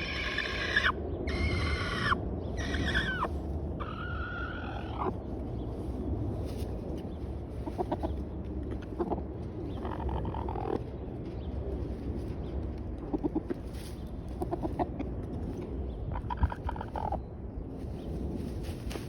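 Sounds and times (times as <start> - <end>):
chicken clucking: 1.9 - 5.2, 7.6 - 11.0, 13.0 - 17.2.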